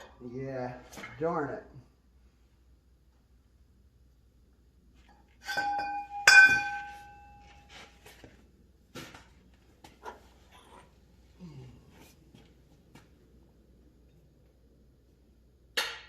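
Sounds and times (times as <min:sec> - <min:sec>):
metal clanks ringing: 0:05.4 - 0:07.7.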